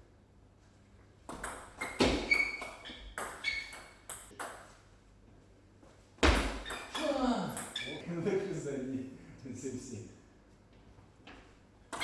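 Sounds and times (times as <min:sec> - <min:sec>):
table tennis ball pinging: 0:01.3 - 0:04.7, 0:06.2 - 0:07.9.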